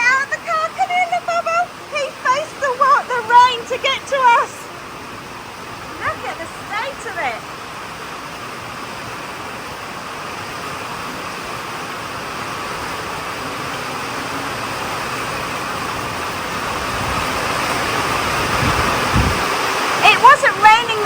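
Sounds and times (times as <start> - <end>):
steady rain falling: 0.0 - 21.0
low thumps: 18.5 - 19.5.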